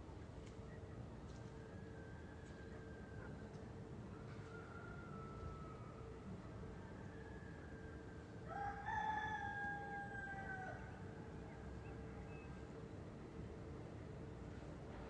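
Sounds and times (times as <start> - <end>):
faint steady background drone: 0.0 - 15.0
distant rooster crowing: 4.1 - 11.5.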